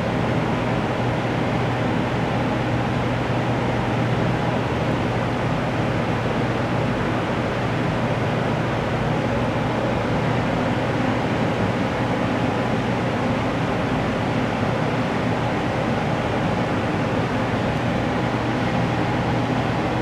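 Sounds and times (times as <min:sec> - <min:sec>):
low constant hum: 0:00.0 - 0:20.0
ventilation fan rushing air: 0:00.0 - 0:20.0.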